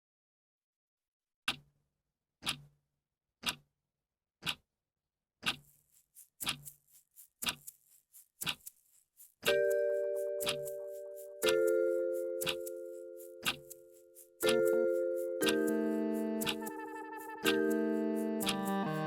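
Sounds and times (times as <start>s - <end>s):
clock ticking: 1.5s - 1.7s, 2.4s - 2.7s, 3.4s - 3.7s, 4.4s - 4.6s, 5.4s - 5.8s, 6.4s - 6.8s, 7.4s - 7.8s, 8.4s - 8.8s, 9.4s - 19.0s.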